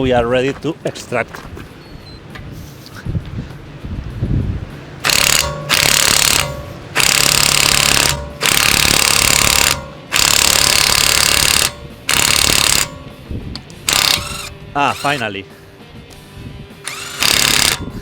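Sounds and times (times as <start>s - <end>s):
impact wrench hammering: 5.0s - 13.2s, 13.9s - 15.2s, 16.9s - 18.0s.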